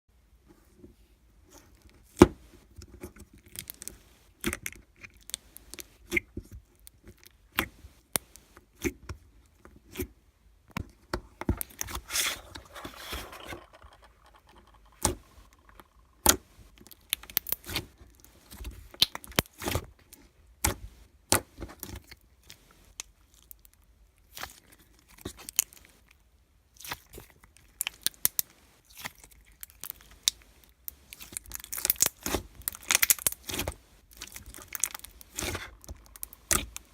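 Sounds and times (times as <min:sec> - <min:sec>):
scraping and rustling: 0:11.6 - 0:16.8.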